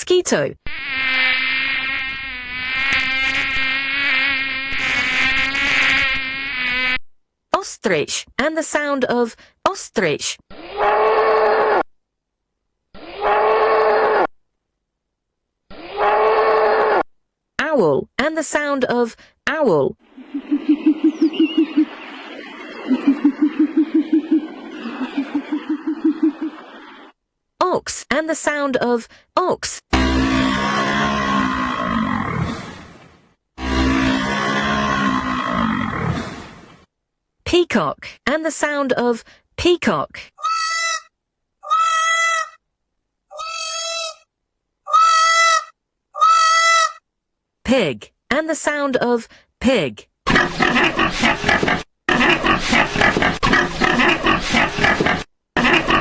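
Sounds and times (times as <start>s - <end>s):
mosquito buzzing: 0.6s - 7.1s
owl hooting: 20.1s - 27.1s.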